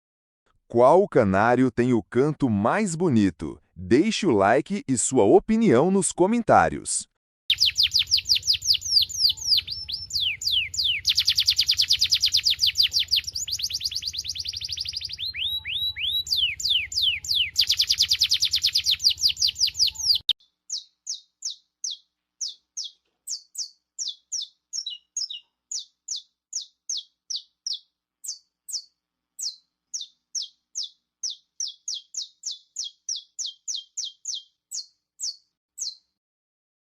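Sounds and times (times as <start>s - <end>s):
bird singing fast trills: 7.5s - 36.1s.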